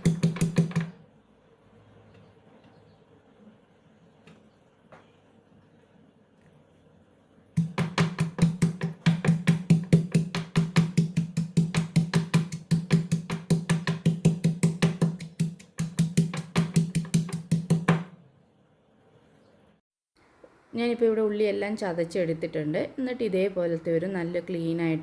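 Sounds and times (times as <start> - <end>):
pestle pounding in stone mortar: 0.0 - 1.0, 7.6 - 18.1.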